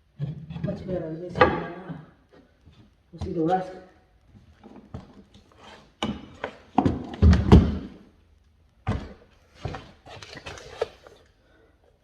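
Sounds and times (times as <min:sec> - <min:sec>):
thumps on wooden staircase: 0:06.8 - 0:07.9.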